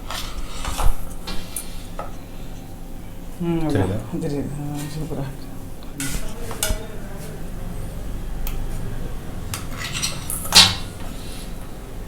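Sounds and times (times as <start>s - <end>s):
spoon clinking on metal plates: 6.0s - 7.0s, 9.5s - 11.7s.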